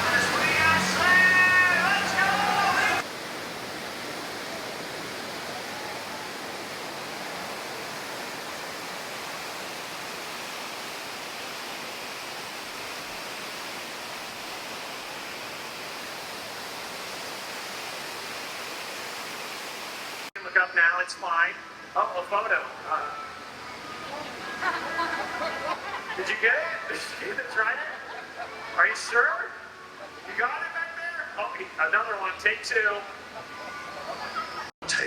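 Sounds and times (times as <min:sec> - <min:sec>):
water rushing and swirling: 0:00.0 - 0:20.3.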